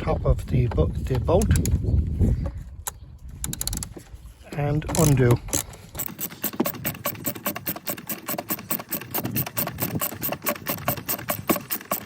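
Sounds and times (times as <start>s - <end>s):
socket ratchet clicking: 4.9s - 12.0s.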